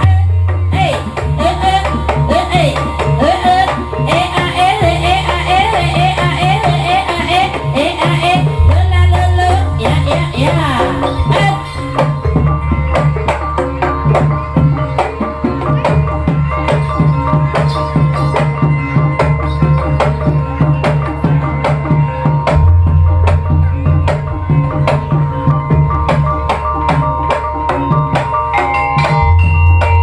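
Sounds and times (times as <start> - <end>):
rapid hand drum strokes: 0.0 - 28.5
held metallic tones: 8.4 - 14.0, 22.4 - 30.0
deep sustained bass note: 8.6 - 13.1, 22.5 - 27.2.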